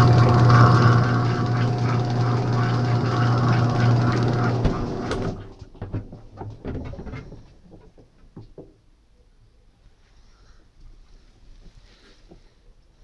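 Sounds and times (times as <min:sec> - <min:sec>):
washing machine motor humming: 0:00.0 - 0:07.3
knocks and clicks: 0:00.0 - 0:08.7.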